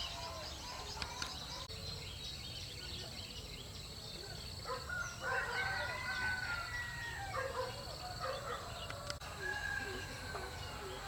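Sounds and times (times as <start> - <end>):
rooster crowing: 4.9 - 7.5, 9.0 - 11.0.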